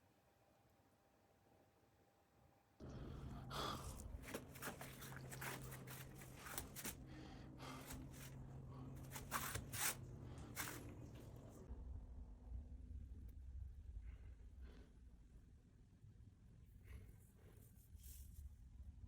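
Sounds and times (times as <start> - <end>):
steady low hum: 2.8 - 17.5.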